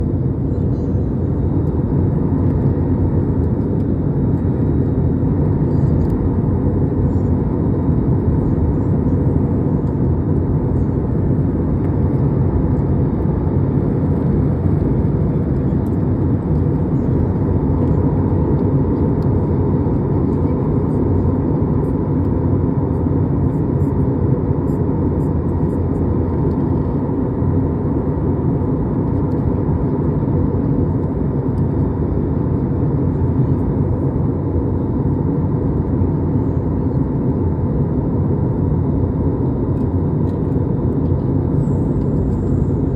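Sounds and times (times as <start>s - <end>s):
vehicle low rumble: 0.0s - 23.1s, 33.2s - 42.9s.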